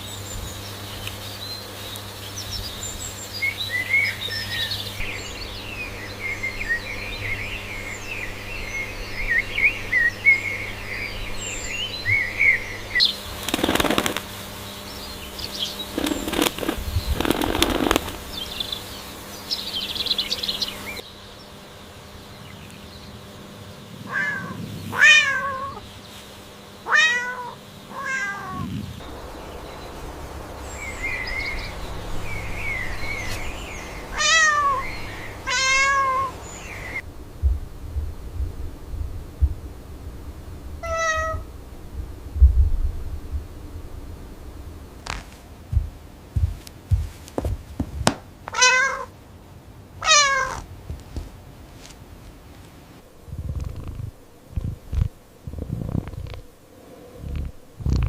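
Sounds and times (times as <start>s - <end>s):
small birds chirping: 0.0s - 37.6s, 53.1s - 58.0s
rustling noise: 13.2s - 14.6s, 15.8s - 19.3s, 32.3s - 34.1s, 44.7s - 48.6s, 50.3s - 56.5s
cat meowing: 24.1s - 25.8s, 26.9s - 28.7s, 34.1s - 36.4s, 40.8s - 41.5s, 48.5s - 49.1s, 50.0s - 50.7s.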